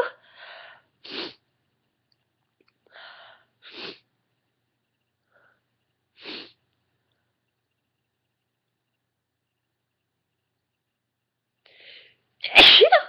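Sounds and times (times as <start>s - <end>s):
breathy in-breath: 0.2s - 0.9s, 2.9s - 3.5s, 11.7s - 12.2s
woman sneezing: 12.4s - 13.0s.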